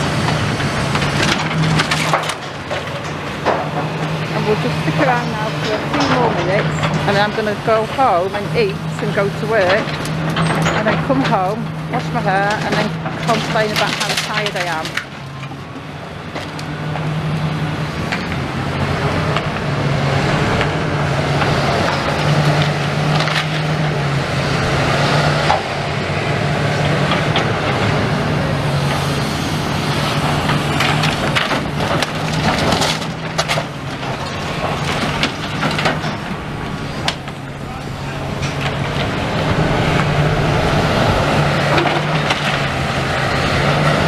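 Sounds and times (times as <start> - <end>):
rubble crunching and cracking: 0.0 - 17.1, 28.6 - 44.0
excavator engine droning: 0.0 - 44.0.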